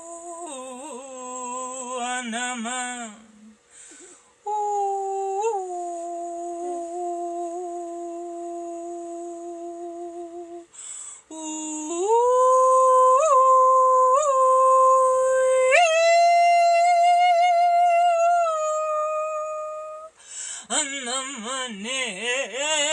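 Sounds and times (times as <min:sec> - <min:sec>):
woman humming long notes: 0:00.0 - 0:03.6, 0:04.4 - 0:10.7, 0:11.3 - 0:20.2
woman breathing: 0:03.6 - 0:04.4, 0:10.7 - 0:11.3, 0:20.1 - 0:20.7.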